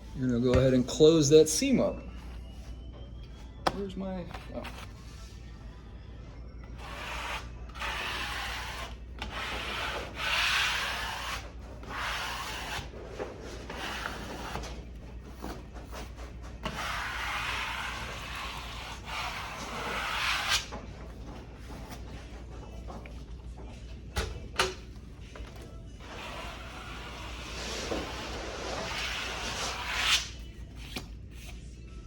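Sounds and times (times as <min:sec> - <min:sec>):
tool scraping over wallpaper: 0:06.8 - 0:22.9, 0:26.0 - 0:30.5.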